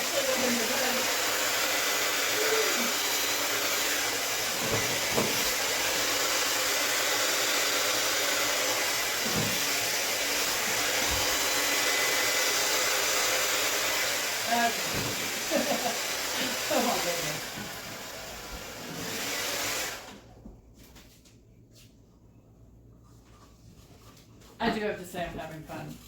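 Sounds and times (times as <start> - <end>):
hair dryer blowing: 0.0 - 20.3.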